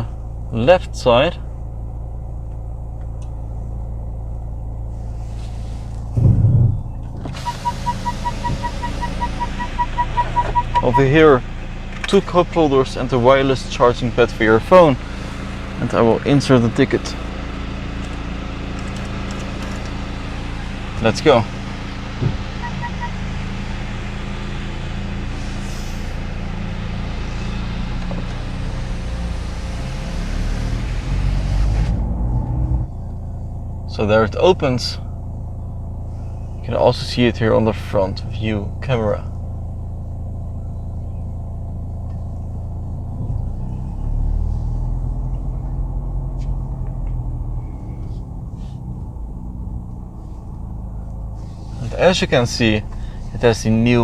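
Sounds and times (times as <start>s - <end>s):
car engine idling: 0.0s - 54.0s
low thud: 6.1s - 7.4s, 22.2s - 22.4s
rapid high electronic beeping: 7.6s - 11.1s.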